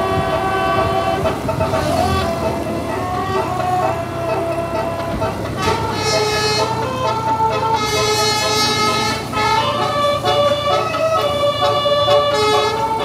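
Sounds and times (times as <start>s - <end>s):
low engine hum: 0.0s - 13.0s
musical air horns playing tune: 0.0s - 13.0s.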